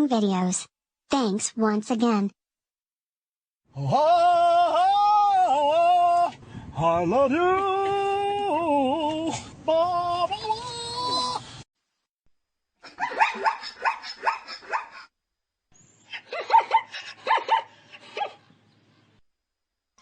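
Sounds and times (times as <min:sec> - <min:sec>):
zebra yipping barks: 0:13.0 - 0:15.0.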